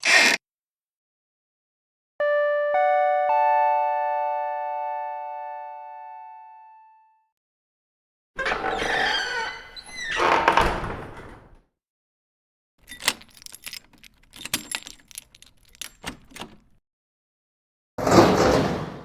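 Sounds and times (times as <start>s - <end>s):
door banging shut: 8.4s - 11.6s, 12.9s - 16.7s
metallic door latch clicks and rattles: 12.8s - 16.8s.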